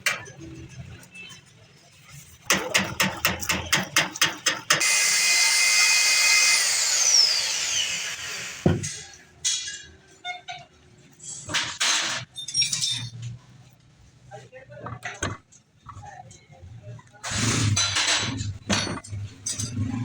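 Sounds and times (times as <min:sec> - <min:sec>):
power tool whining: 0:04.8 - 0:08.9.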